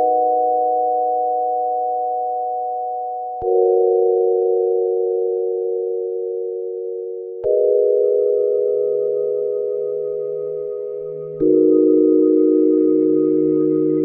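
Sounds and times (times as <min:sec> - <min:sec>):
sustained electronic chords: 0:07.5 - 0:14.0.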